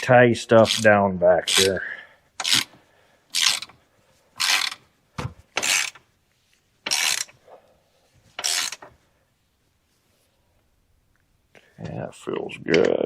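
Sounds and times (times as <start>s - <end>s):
hand ratchet clicking: 0.6s - 0.9s, 2.4s - 2.7s, 3.3s - 3.8s, 4.4s - 4.8s, 5.6s - 6.0s, 6.8s - 7.4s, 8.4s - 8.9s.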